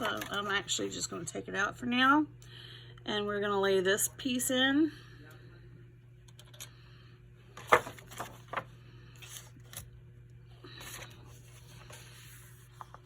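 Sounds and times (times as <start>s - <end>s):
paper and foil crinkling: 7.6s - 9.9s.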